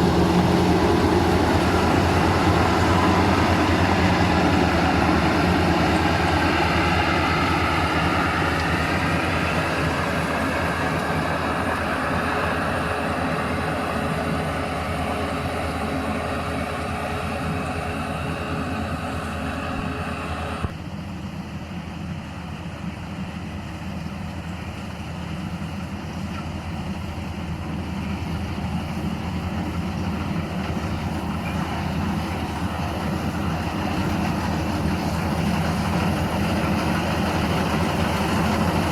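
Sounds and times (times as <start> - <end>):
combine harvester droning: 0.0 - 38.9.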